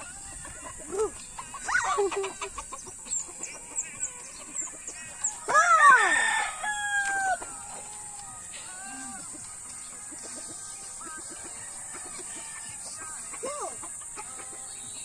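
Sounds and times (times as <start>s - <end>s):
chicken clucking: 0.0s - 15.0s
rooster crowing: 5.0s - 9.5s.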